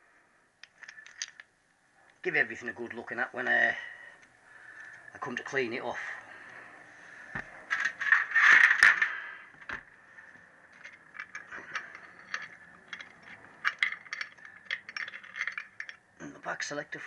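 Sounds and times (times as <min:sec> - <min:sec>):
metal parts clattering: 0:00.7 - 0:01.4, 0:07.7 - 0:09.8, 0:10.7 - 0:16.1
metal parts clinking: 0:00.7 - 0:01.5, 0:07.7 - 0:09.2, 0:10.7 - 0:16.1.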